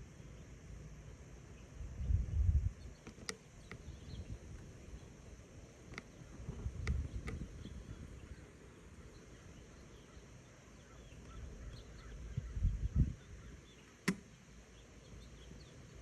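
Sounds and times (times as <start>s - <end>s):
small bird chirps: 1.5s - 5.2s, 6.0s - 14.0s
low rumble on microphone: 1.6s - 3.0s, 3.6s - 10.2s, 10.8s - 13.8s
sharp clicks: 3.0s - 3.9s, 5.9s - 7.6s, 13.9s - 14.3s.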